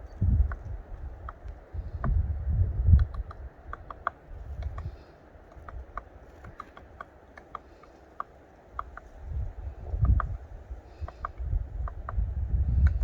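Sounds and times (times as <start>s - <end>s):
low fire rumble: 0.0s - 3.7s.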